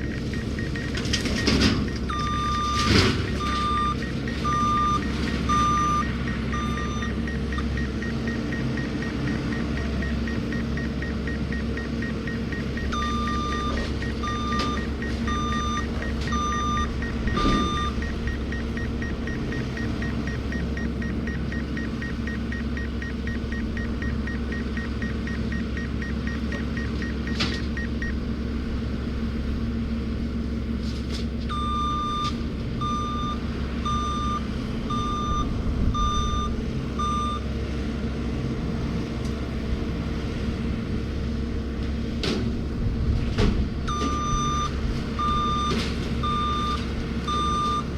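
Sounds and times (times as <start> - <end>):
warning beeps: 0.0 - 28.2, 31.5 - 37.4, 43.9 - 47.9
machine hum: 0.0 - 30.8.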